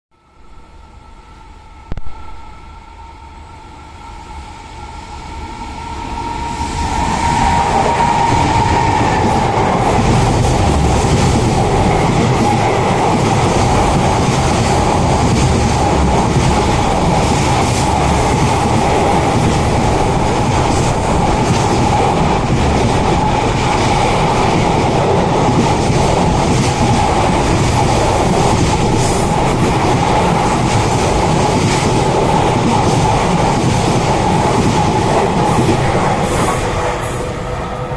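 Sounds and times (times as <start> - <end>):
freight train rumbling past: 0.2 - 37.9.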